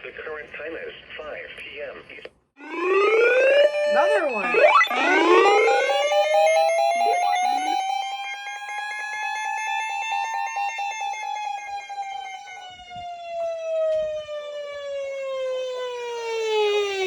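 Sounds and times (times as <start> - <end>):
siren-like alert tone: 2.6 - 17.0.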